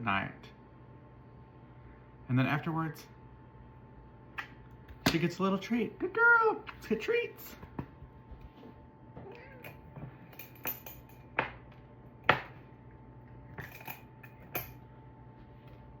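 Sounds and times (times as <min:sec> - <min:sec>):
faint cat sounds: 0:09.1 - 0:10.2.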